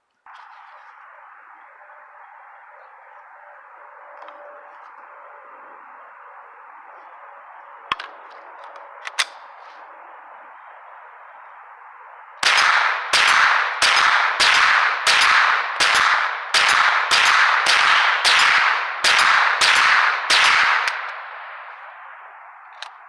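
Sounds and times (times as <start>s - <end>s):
rapid gunshots: 12.4s - 21.4s.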